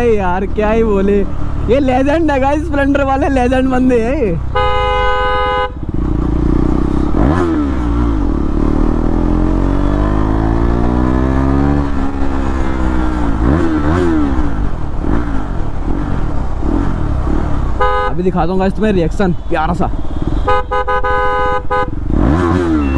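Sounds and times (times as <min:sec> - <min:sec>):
motorcycle engine revving: 0:00.0 - 0:18.6, 0:21.7 - 0:22.9
vehicle horn: 0:04.5 - 0:06.0, 0:17.8 - 0:18.2, 0:19.4 - 0:22.9.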